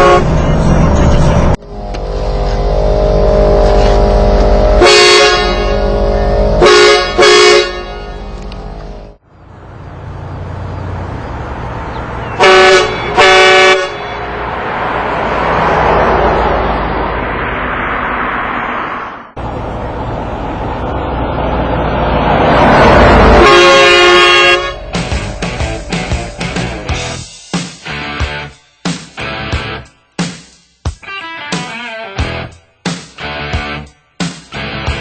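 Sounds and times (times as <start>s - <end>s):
train-style air horn blasts: 0.0s - 0.4s, 1.7s - 8.4s, 12.4s - 14.4s, 23.2s - 26.3s.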